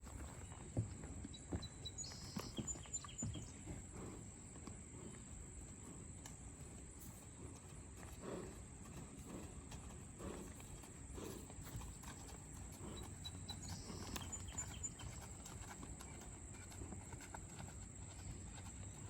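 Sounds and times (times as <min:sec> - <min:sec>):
horse hooves thudding: 0:00.0 - 0:19.0.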